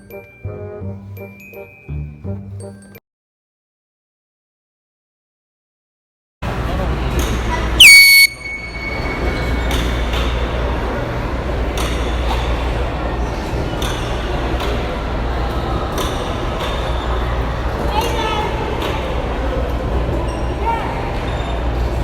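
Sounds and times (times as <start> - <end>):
air horn blast: 7.8 - 8.7.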